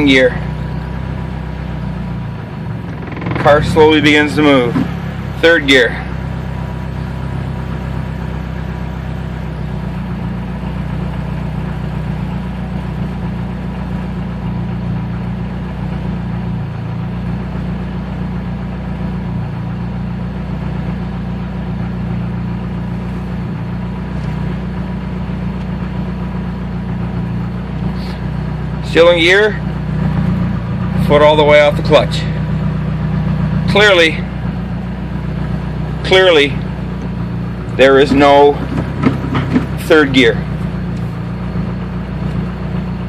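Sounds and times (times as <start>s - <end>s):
car engine idling: 0.0s - 43.0s.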